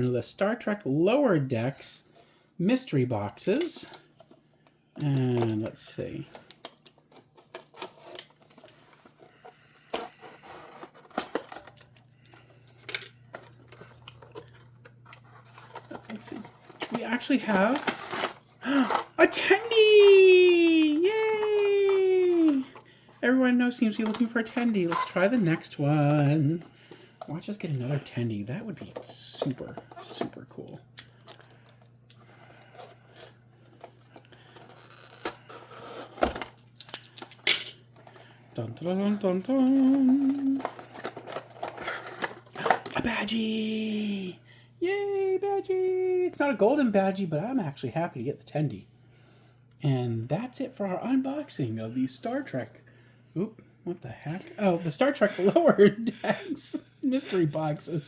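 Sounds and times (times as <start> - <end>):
faint steady hum: 0.0 - 58.0
packaging rubbing and scraping: 7.2 - 11.8, 13.3 - 19.6, 33.9 - 36.5, 39.2 - 42.9
packaging being handled: 38.0 - 43.3.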